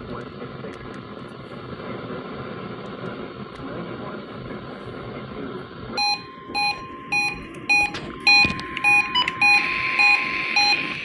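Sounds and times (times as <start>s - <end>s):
radio static hiss: 0.0s - 6.0s, 7.0s - 11.0s
radio receiver short beeps: 6.0s - 11.0s.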